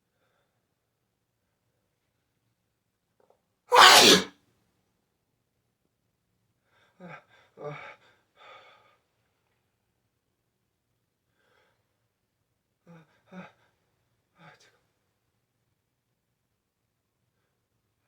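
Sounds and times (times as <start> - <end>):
person gasping before sneeze: 3.7 - 4.3.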